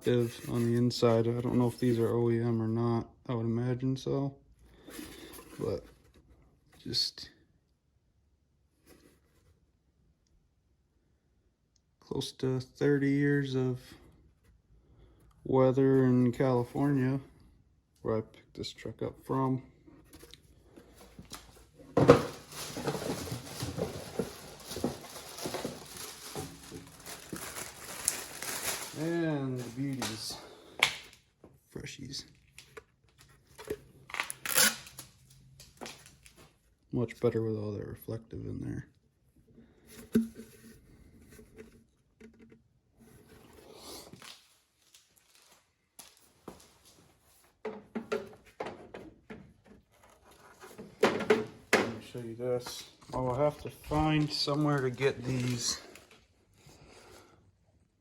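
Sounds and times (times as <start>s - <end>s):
plastic parts and packaging rustling: 0.0s - 2.3s, 19.3s - 31.3s, 32.2s - 36.8s, 39.8s - 57.2s
soft rustling: 20.8s - 30.0s.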